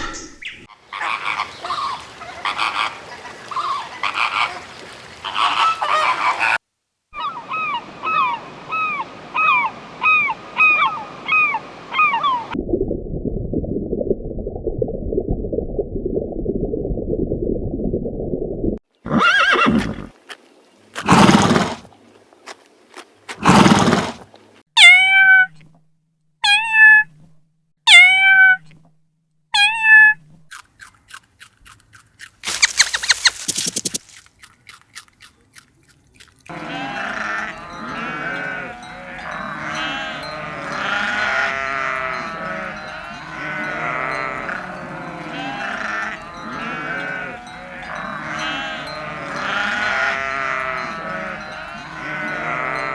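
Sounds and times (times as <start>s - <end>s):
animal calls: 0.6s - 6.6s, 32.4s - 34.2s
flock bleating: 36.5s - 52.9s.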